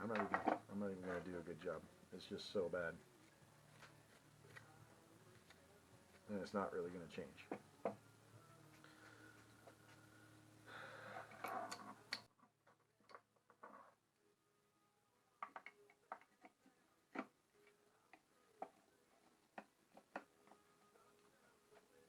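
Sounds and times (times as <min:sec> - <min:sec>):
low background hum: 0:00.0 - 0:12.2.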